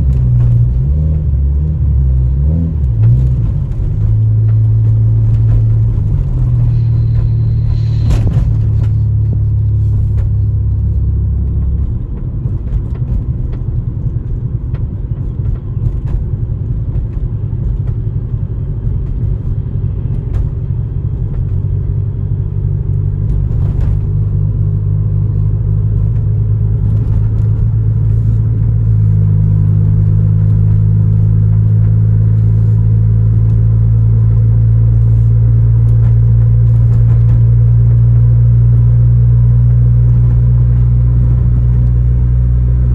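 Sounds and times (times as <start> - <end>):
car engine misfiring: 2.8 - 22.2.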